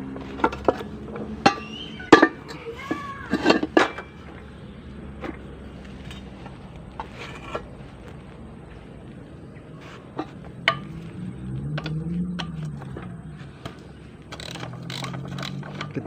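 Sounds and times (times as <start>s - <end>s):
metal parts clicking and knocking: 3.3s - 4.4s, 11.8s - 16.0s
low drone: 3.4s - 16.0s.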